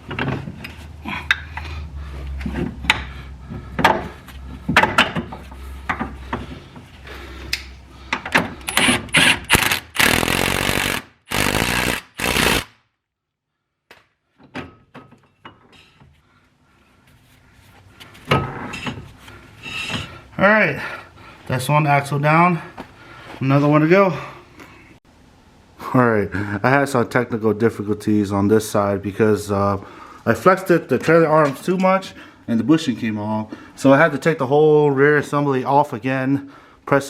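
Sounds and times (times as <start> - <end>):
impact wrench bursts: 8.6 - 12.7.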